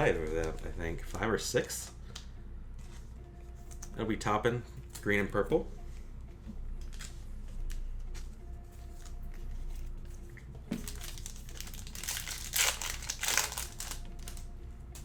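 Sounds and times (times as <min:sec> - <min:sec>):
foil wrapper tearing and crinkling: 0:10.8 - 0:14.5.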